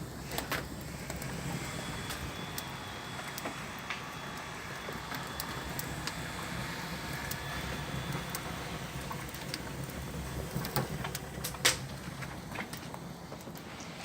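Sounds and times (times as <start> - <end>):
low fire rumble: 0.0 - 14.0
wood fire crackling: 0.0 - 14.0.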